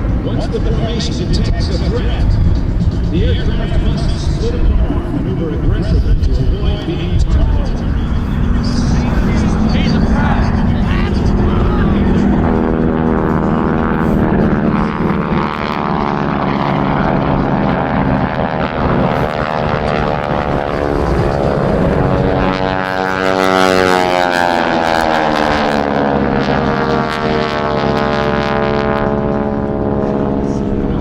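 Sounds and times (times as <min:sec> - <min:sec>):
propeller planes droning past: 0:00.0 - 0:31.0.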